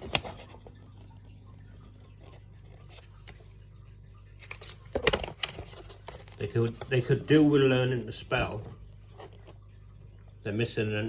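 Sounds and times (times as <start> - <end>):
soft taps and rustles: 0.0 - 3.6, 4.4 - 7.5
low room hum: 0.0 - 11.0
loud rustling and knocks: 4.9 - 7.1.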